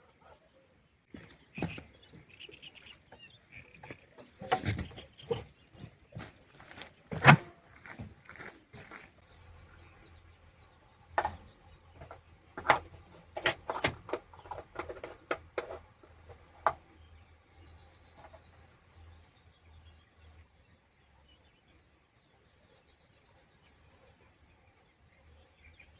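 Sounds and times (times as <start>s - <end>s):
sharp clicks and knocks: 11.1s - 16.9s.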